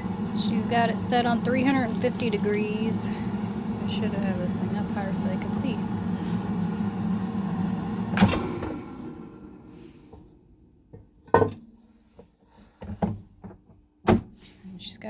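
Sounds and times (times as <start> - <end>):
air fryer fan humming: 0.0 - 11.7.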